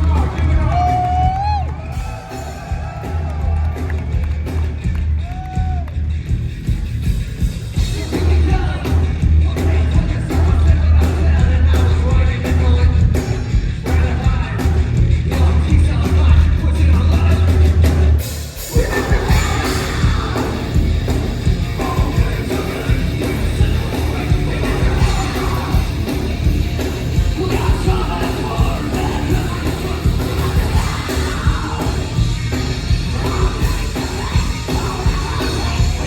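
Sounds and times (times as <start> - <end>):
heavy bass: 0.0 - 36.0
live rock band playing: 0.0 - 36.0
person singing: 18.7 - 26.3, 27.2 - 36.0.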